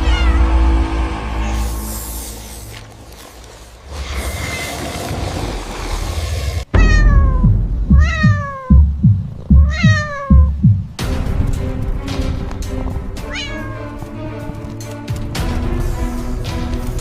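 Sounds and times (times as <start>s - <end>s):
cat meowing: 0.0s - 0.6s, 6.8s - 8.9s, 9.5s - 10.6s, 13.2s - 13.9s
rushing hissy noise: 0.0s - 6.7s
music with deep bass thumps: 6.8s - 13.1s.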